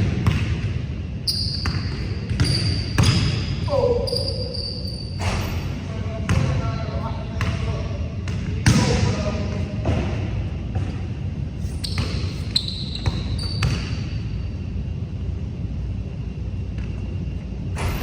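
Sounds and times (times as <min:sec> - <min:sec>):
basketball bouncing on a court: 0:00.0 - 0:03.6, 0:06.2 - 0:11.2, 0:11.8 - 0:14.2.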